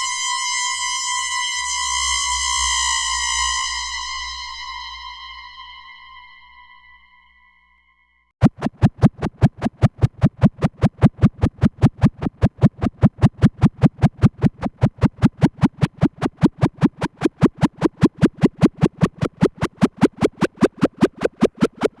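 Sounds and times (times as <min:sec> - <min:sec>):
electronic zapping pulses: 0:08.4 - 0:22.0.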